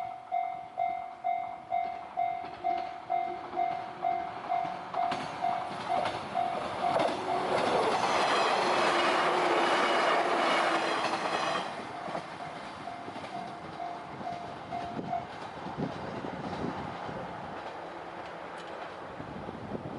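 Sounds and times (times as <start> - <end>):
level crossing alarm: 0.0 - 8.2
train passing: 0.0 - 19.9.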